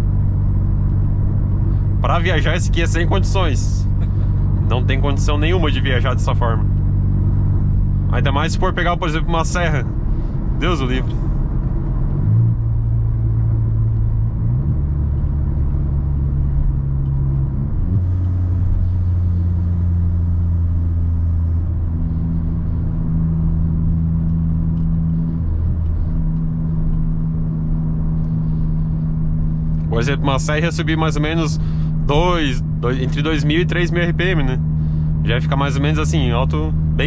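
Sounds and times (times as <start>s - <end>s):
car exhaust drone at highway speed: 0.0s - 37.0s.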